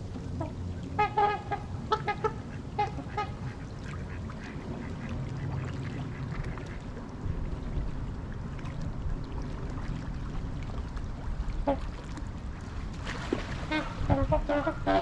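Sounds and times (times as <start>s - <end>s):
low background rumble: 0.0s - 15.0s
waterfowl honking: 0.4s - 5.1s, 13.6s - 15.0s.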